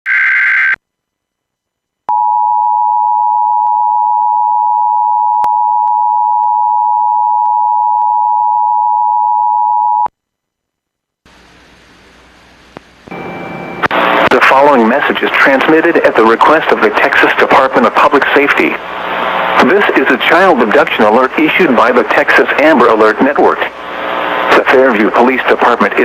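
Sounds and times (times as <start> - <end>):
faint radio hiss: 11.3 - 26.0
two-tone attention signal: 13.1 - 13.8
automated voice: 13.9 - 26.0.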